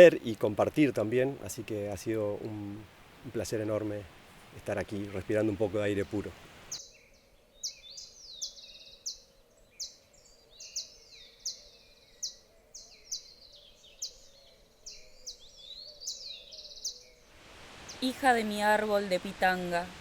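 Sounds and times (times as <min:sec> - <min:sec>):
bird chirps and trills: 0:06.0 - 0:17.2.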